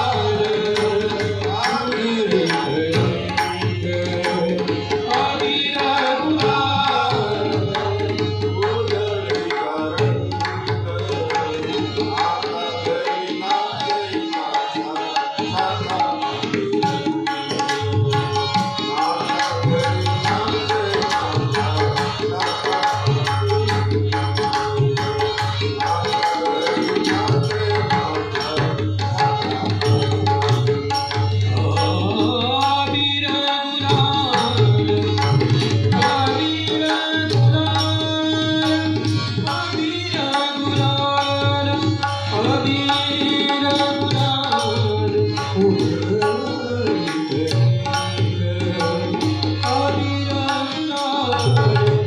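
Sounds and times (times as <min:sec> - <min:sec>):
hand drums playing rapidly: 0:00.0 - 0:52.0.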